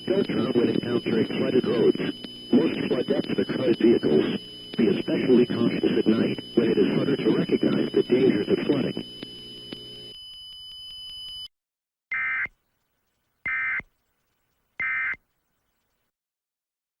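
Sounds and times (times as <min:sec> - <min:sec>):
buzzy digital data bursts: 0:00.0 - 0:10.1
faint high whine and hum: 0:00.0 - 0:10.2.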